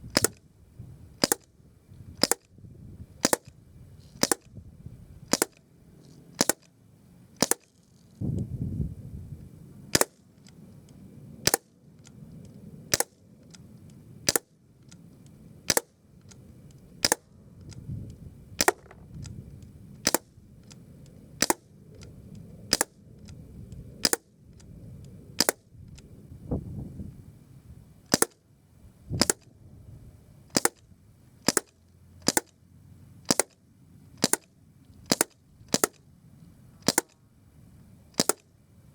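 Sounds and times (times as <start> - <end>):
bb gun shots: 0.1 - 0.4, 1.2 - 1.5, 2.2 - 2.4, 3.2 - 3.5, 4.2 - 4.5, 5.3 - 5.6, 6.4 - 6.6, 7.4 - 7.7, 10.0 - 10.2, 18.6 - 19.1, 28.1 - 28.4, 29.2 - 29.4, 33.3 - 33.6, 34.2 - 34.4, 35.1 - 36.0, 36.8 - 37.2, 38.2 - 38.4.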